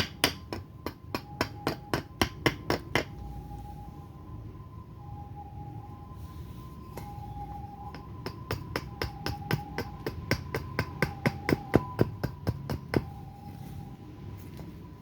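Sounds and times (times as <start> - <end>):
axe chopping wood: 0.0 - 3.1, 8.0 - 13.2.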